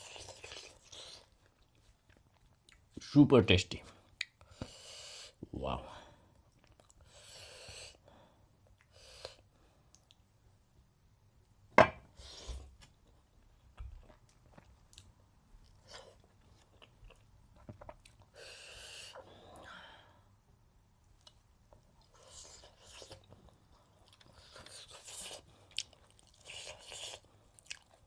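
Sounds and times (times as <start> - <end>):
person chewing: 0.0 - 3.0, 12.3 - 18.4, 22.0 - 28.0.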